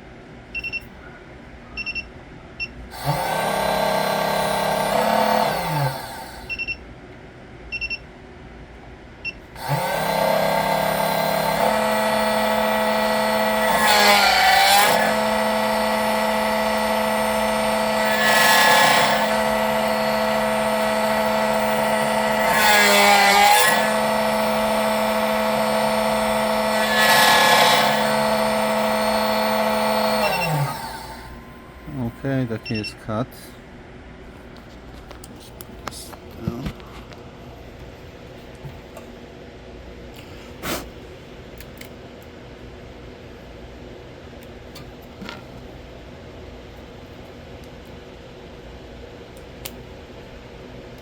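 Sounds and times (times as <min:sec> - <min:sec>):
short beeps: 0:00.6 - 0:00.9, 0:01.8 - 0:02.8, 0:31.4 - 0:33.0
key-cutting machine motor whine: 0:02.9 - 0:06.8, 0:09.5 - 0:33.0.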